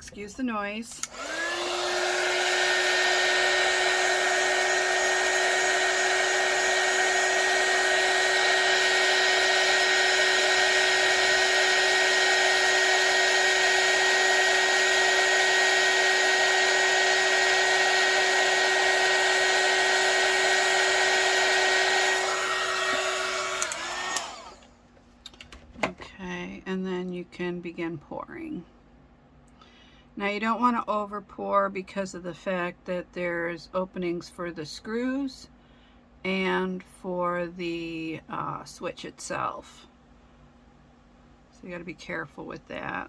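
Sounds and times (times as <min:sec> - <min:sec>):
heat gun running: 0:00.9 - 0:24.7.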